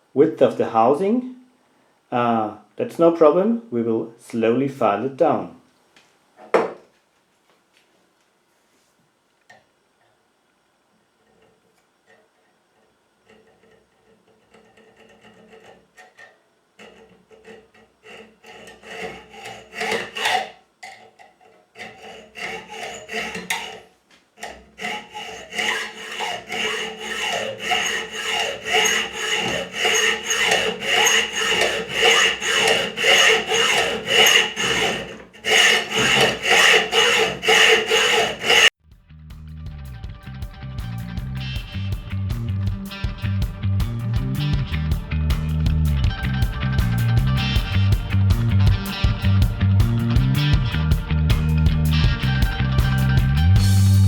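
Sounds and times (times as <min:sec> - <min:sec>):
file rasping on metal: 0:13.2 - 0:38.8.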